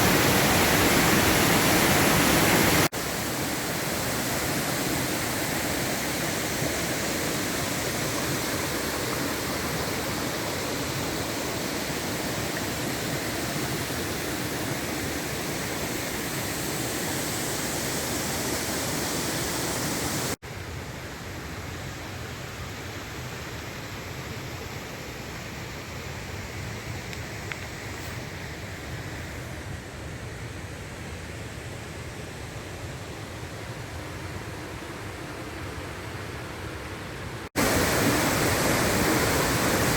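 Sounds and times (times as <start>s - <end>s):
running water hissing: 0.0s - 20.4s, 37.5s - 39.9s.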